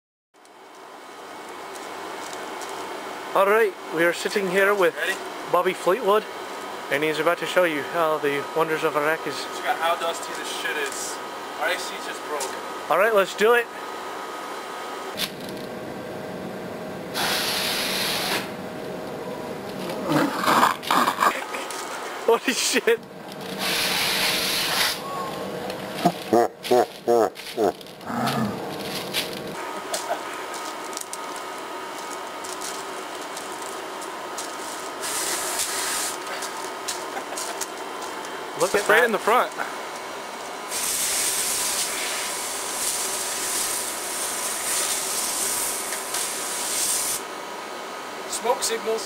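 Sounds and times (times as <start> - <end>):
steady low hum: 0.5 - 49.0
compressed air hissing: 17.1 - 18.5, 23.5 - 25.0, 35.0 - 36.2, 40.7 - 47.2.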